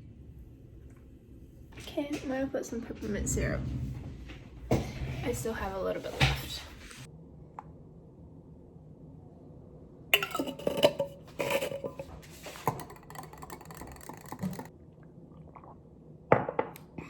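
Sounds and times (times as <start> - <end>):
mug and bottle clinking: 10.2 - 14.7.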